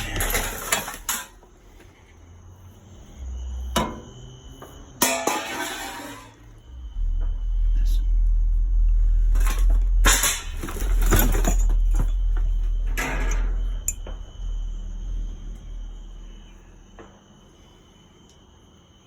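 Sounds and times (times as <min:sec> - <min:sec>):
junk clattering in a dumpster: 0:00.0 - 0:01.6, 0:03.7 - 0:07.8, 0:08.4 - 0:16.3
crickets chirping: 0:00.0 - 0:19.0
low rumble: 0:06.4 - 0:17.1.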